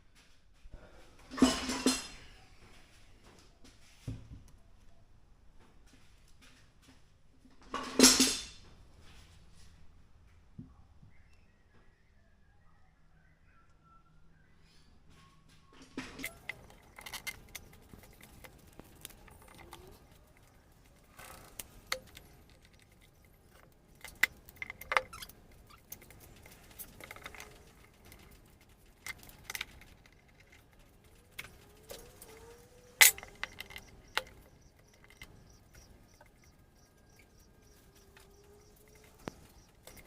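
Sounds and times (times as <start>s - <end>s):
tools and materials clinking: 1.3s - 2.4s, 15.8s - 40.0s.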